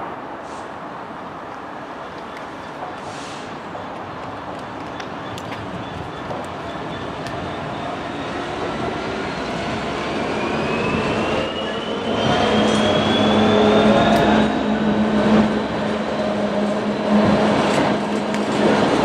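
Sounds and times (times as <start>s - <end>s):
train running: 0.0s - 19.0s.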